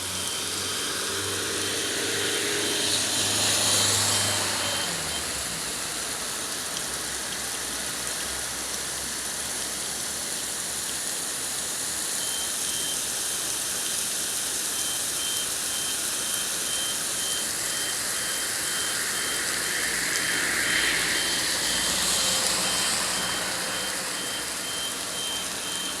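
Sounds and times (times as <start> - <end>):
rapid high-pitched beeping: 0.0 - 2.0, 14.8 - 26.0
heavy rain falling: 0.0 - 11.0, 12.2 - 26.0
vehicle passing: 19.0 - 25.2.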